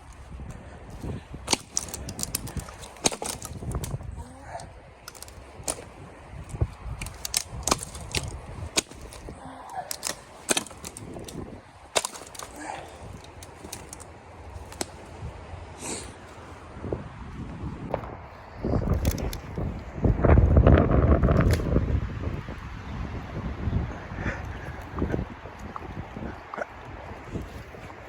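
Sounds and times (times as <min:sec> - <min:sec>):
wood cracking and snapping: 0:01.0 - 0:15.1.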